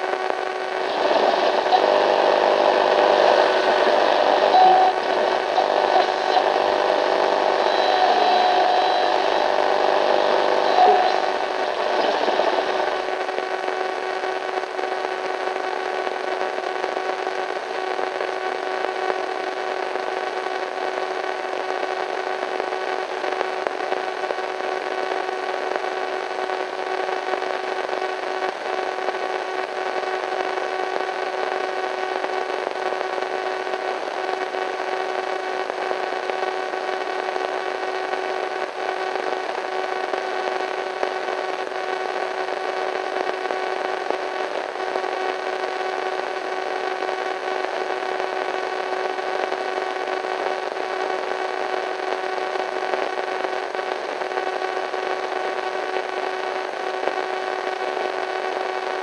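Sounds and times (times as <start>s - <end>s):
radio static hiss: 0.0s - 59.0s
faint steady tones: 0.2s - 13.9s.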